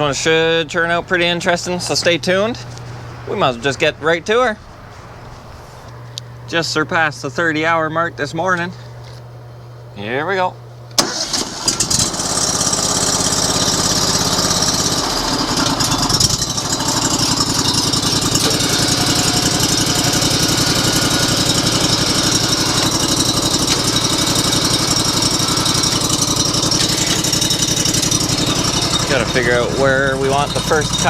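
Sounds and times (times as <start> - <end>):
sawmill engine running: 11.0 - 31.0.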